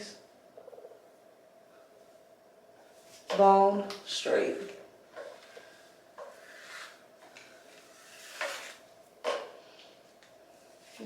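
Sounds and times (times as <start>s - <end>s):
faint steady hum: 0.0s - 11.0s
person speaking: 3.3s - 4.8s.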